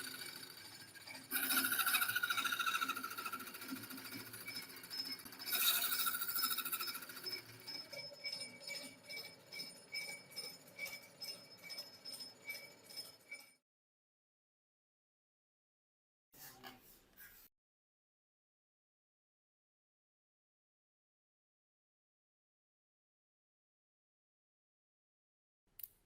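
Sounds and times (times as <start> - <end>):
chiming electronic music: 0.0 - 13.6.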